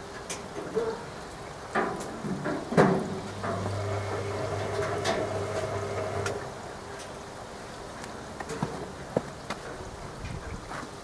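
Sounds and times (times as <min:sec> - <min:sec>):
washing machine motor hum: 0:03.2 - 0:06.6.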